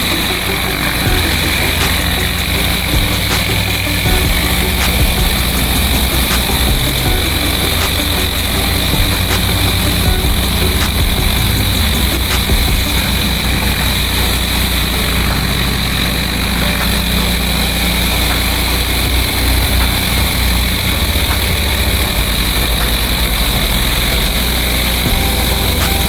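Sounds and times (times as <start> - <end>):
high-pressure water spraying: 0.0 - 26.0
pressure washer engine running: 0.0 - 26.0.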